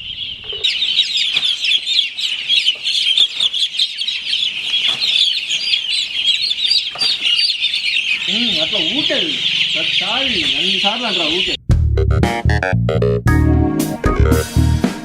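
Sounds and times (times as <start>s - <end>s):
chickens peeping and chirping: 0.0s - 11.6s.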